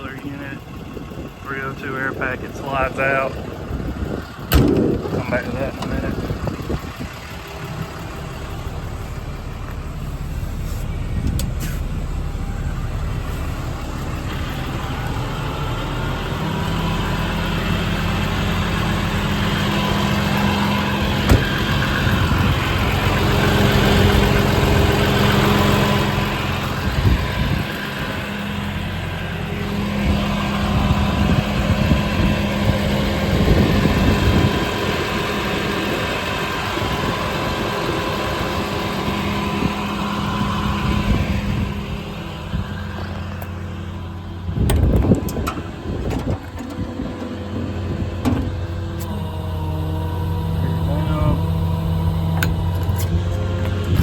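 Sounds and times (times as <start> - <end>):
steady low hum: 0.0 - 35.1
diesel engine idling: 0.0 - 54.0.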